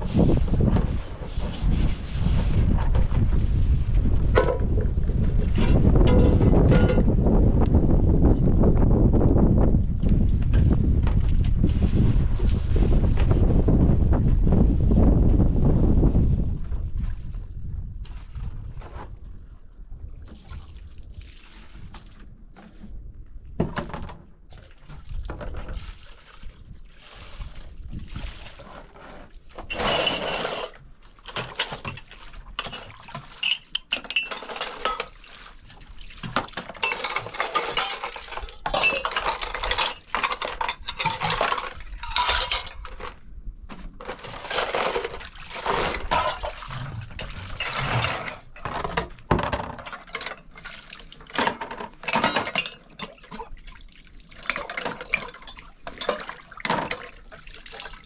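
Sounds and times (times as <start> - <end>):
clinks and knocks: 5.6 - 7.1, 31.3 - 35.2, 36.4 - 43.2, 45.9 - 50.6, 51.3 - 53.4, 54.5 - 57.1
water splashing: 29.7 - 42.7, 44.3 - 49.0, 49.9 - 58.0.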